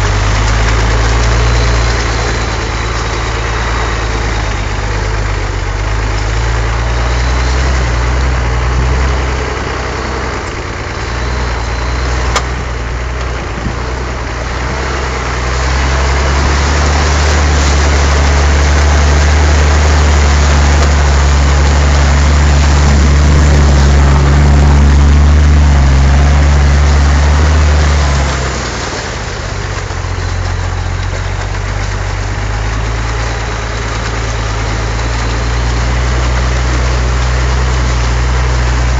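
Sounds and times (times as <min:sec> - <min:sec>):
vehicle engine running: 0:00.0 - 0:38.9.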